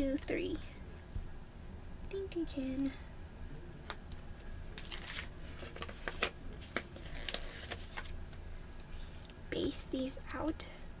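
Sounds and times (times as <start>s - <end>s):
stickers peeling papery rustles: 4.8s - 8.2s.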